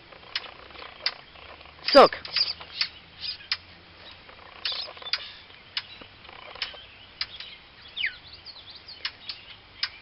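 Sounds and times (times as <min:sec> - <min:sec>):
bird clicking alarm notes: 0:01.8 - 0:03.6, 0:04.6 - 0:07.5.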